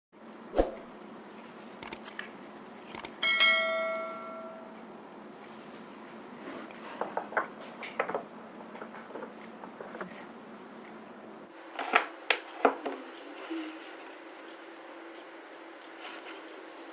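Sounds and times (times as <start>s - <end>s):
bell-like ringing tone: 3.2s - 4.8s.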